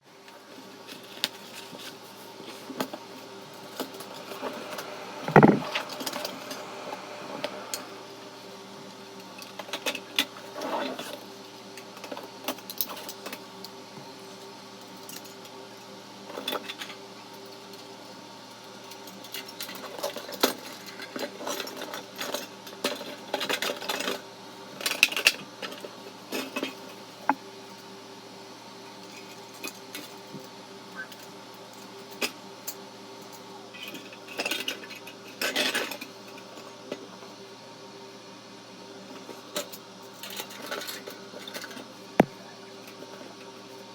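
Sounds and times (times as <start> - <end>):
faint steady hum: 0.5 - 10.3.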